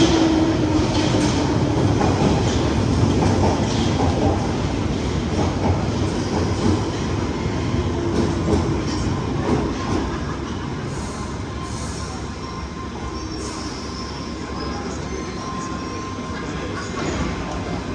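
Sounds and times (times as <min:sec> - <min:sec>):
train wheels clattering on rails: 0:00.0 - 0:10.4.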